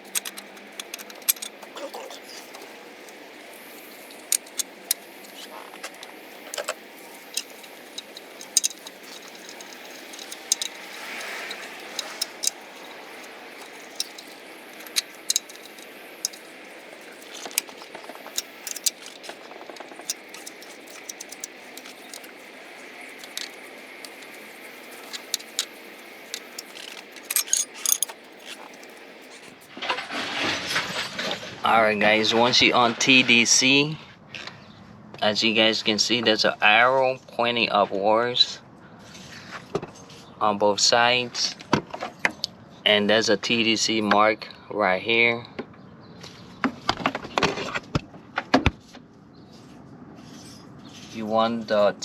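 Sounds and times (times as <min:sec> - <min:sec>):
hand tools clicking on metal: 0:00.0 - 0:29.8.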